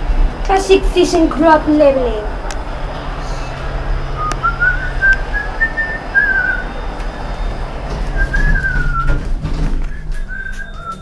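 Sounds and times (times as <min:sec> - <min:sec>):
steady low hum: 0:00.0 - 0:11.0
person whistling a tune: 0:04.2 - 0:11.0.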